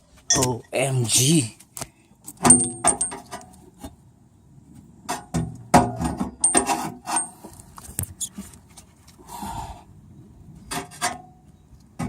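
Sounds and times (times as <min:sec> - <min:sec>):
metal knocks and scrapes: 0:05.1 - 0:07.4.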